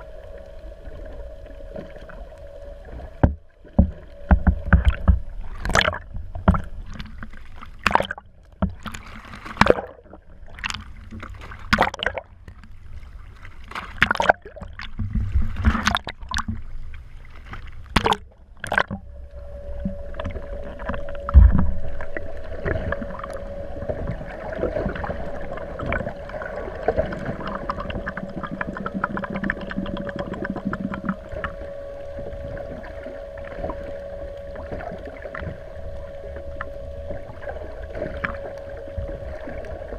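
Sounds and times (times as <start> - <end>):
steady whine: 0.0 - 11.4, 14.8 - 39.9
boat knocks and clunks: 3.2 - 7.0.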